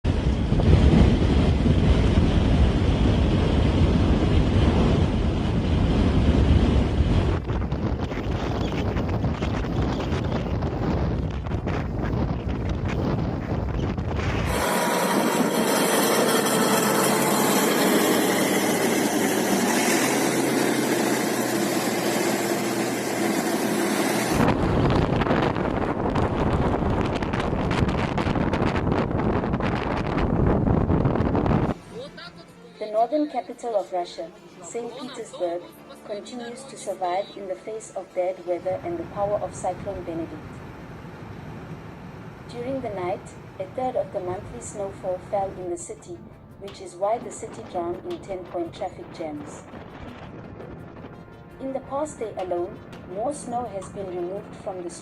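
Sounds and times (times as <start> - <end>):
blizzard wind buffeting microphone: 0.0 - 32.0, 38.2 - 55.0
engine running: 10.5 - 28.1, 36.8 - 55.0.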